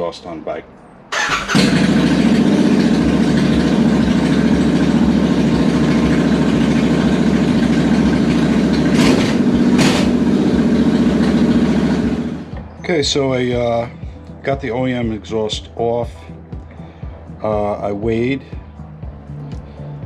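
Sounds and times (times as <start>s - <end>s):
loud engine bursts: 1.1s - 12.6s
motorcycle engine starting: 1.1s - 12.7s
motorcycle engine idling loudly: 1.2s - 12.6s.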